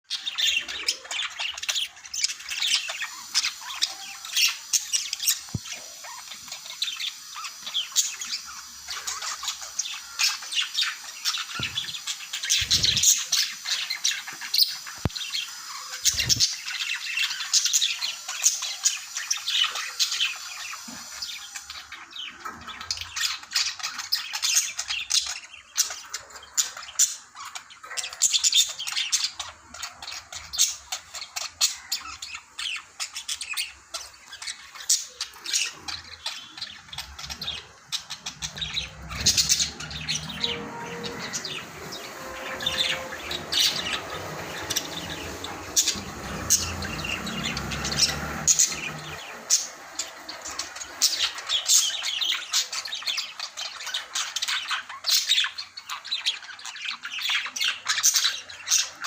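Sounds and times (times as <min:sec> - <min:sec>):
budgerigars chattering: 0:23.0 - 0:59.0.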